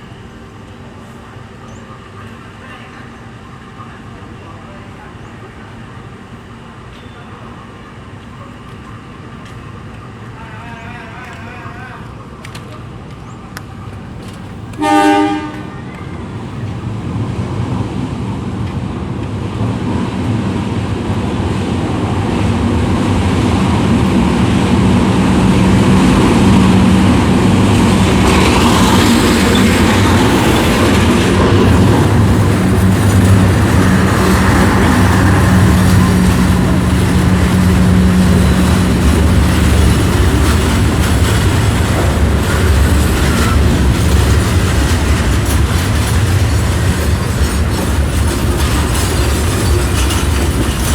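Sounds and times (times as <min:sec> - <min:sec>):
diesel locomotive engine drone: 0:00.0 - 0:50.9
train wheels rumbling on rails: 0:00.0 - 0:50.9.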